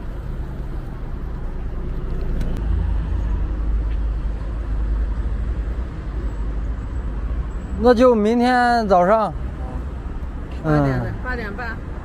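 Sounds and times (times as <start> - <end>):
vehicle engine rumbling: 0.0 - 12.0.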